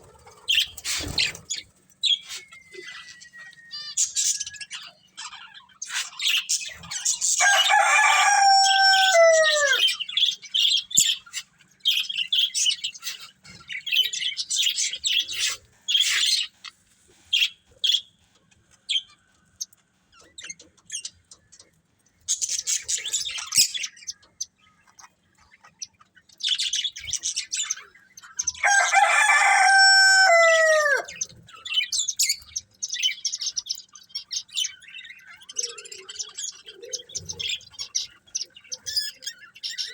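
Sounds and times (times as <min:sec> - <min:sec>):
budgies chirping and twittering: 0:00.0 - 0:39.9
loud falling bird call: 0:07.4 - 0:09.9, 0:28.6 - 0:31.2.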